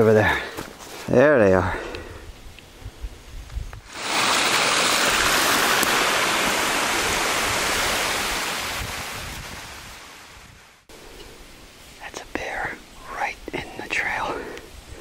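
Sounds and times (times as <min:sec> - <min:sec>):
steady rushing noise: 0:03.8 - 0:10.9.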